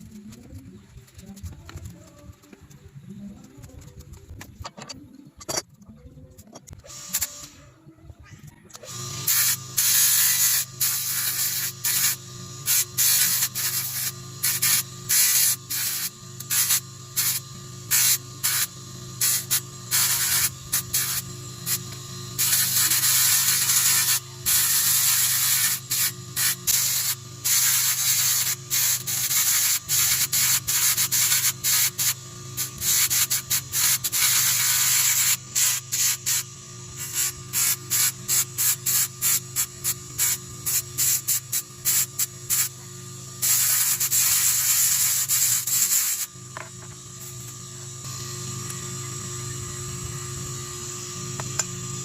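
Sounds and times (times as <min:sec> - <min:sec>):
faint low hum: 0:00.0 - 0:08.9.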